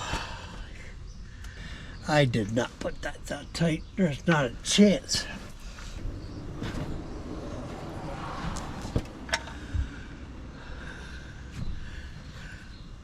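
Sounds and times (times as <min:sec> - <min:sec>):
low rumble: 0:05.6 - 0:12.2.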